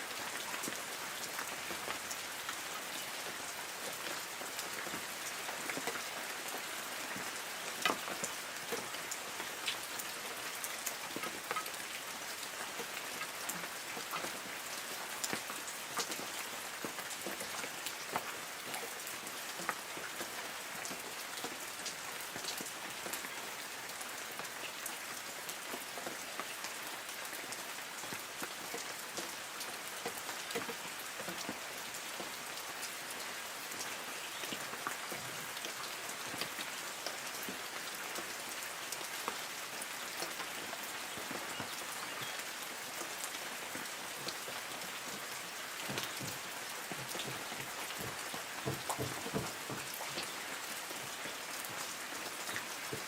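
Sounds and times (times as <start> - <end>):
light rain on leaves: 0.0 - 53.0
raindrop ticks: 45.8 - 50.4.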